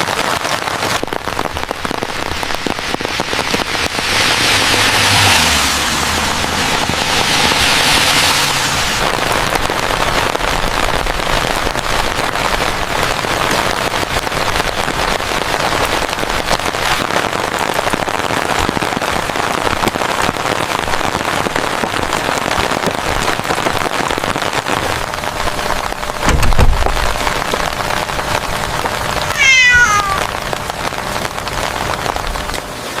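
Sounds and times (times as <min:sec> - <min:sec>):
steady rain falling: 0:00.0 - 0:33.0
low thump: 0:26.2 - 0:27.0
short high animal call: 0:29.3 - 0:30.3.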